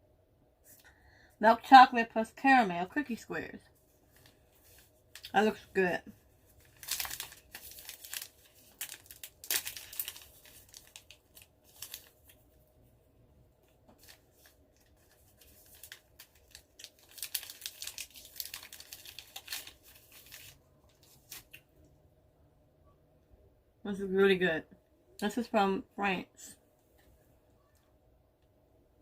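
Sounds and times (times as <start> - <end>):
snack wrapper crackling: 6.5 - 12.5, 13.9 - 21.6.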